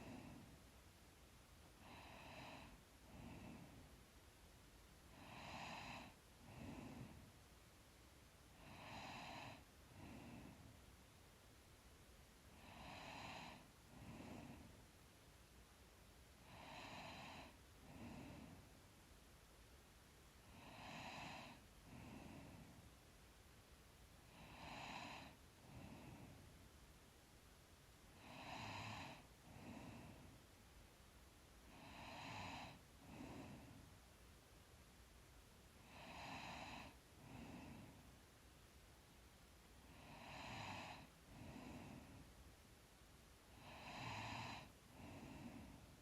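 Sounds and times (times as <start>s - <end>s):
woman breathing with soft snore: 0.0s - 0.7s, 1.6s - 4.0s, 5.0s - 7.6s, 8.4s - 10.9s, 12.4s - 14.9s, 16.4s - 18.8s, 20.4s - 23.0s, 24.2s - 26.6s, 28.1s - 30.6s, 31.6s - 34.1s, 35.8s - 38.2s, 39.8s - 42.4s, 43.5s - 46.0s.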